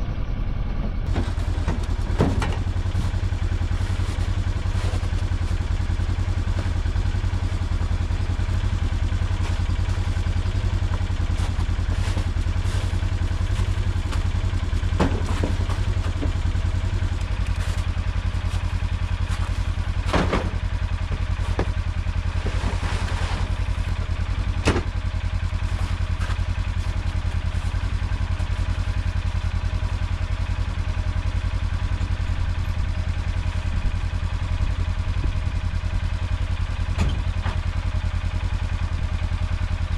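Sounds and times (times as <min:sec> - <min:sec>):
vehicle engine deep rumble: 0:00.0 - 0:39.9
sharp clunks and rattles: 0:01.1 - 0:05.5, 0:10.5 - 0:16.9, 0:19.9 - 0:21.8, 0:24.5 - 0:25.0, 0:36.9 - 0:37.8.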